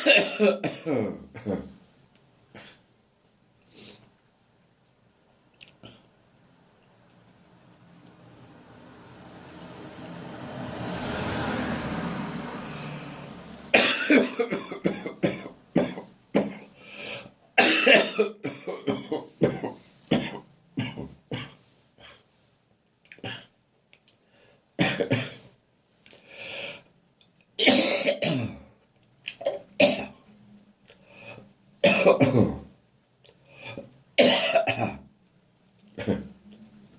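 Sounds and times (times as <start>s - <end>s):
person coughing: 0.0s - 1.8s, 13.7s - 16.7s, 17.6s - 22.2s, 24.8s - 25.5s, 27.6s - 28.7s, 29.4s - 30.2s, 31.8s - 32.7s, 33.7s - 35.0s, 36.0s - 36.4s
throat clearing: 0.0s - 1.8s, 36.0s - 36.4s
rush of background noise: 7.3s - 16.0s.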